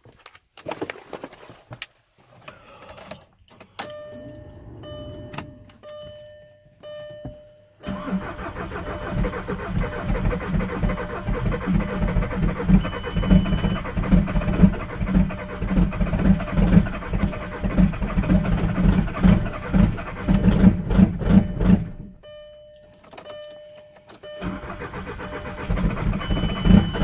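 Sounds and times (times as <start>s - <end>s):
diesel engine cranking: 3.7s - 5.9s, 7.8s - 22.3s, 24.2s - 27.0s
diesel engine clattering: 7.8s - 22.3s, 24.2s - 27.0s.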